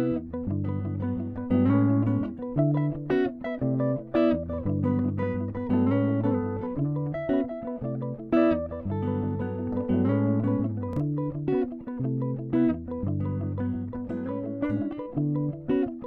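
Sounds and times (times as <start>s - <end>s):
plucked guitar: 0.0s - 16.0s.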